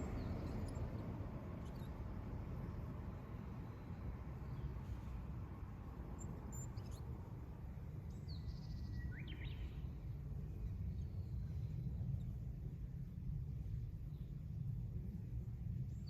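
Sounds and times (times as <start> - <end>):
faint bird chirps: 0.0 - 2.0, 6.2 - 7.1, 8.0 - 12.4
low outdoor rumble: 0.0 - 16.0.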